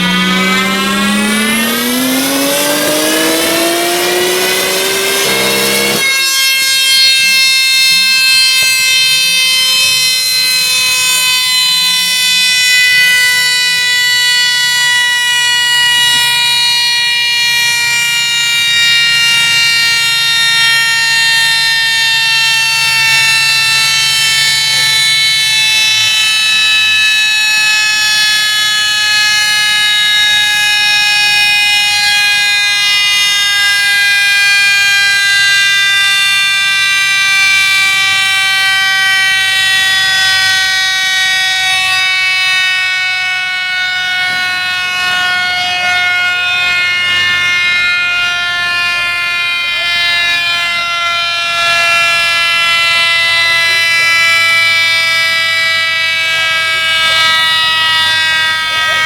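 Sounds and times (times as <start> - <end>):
car engine accelerating: 0.0 - 6.1
high whine falling in pitch: 0.0 - 59.0.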